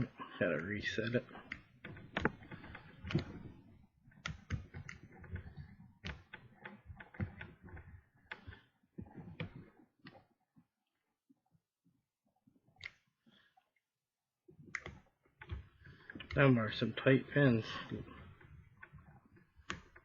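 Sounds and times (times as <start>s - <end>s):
lock pick clicking and scraping: 1.1s - 10.2s.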